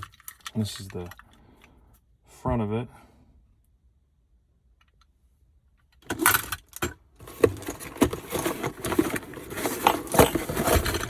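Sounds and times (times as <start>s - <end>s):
lock parts clinking: 0.0s - 1.4s, 5.9s - 11.0s
packaging rustling: 7.2s - 11.0s.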